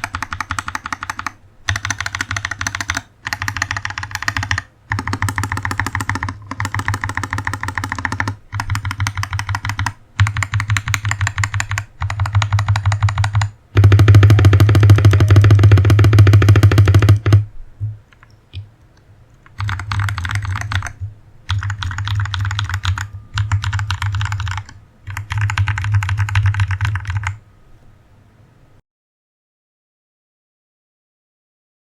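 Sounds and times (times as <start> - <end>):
typing on mechanical keyboard: 0.0 - 17.4, 19.4 - 27.4.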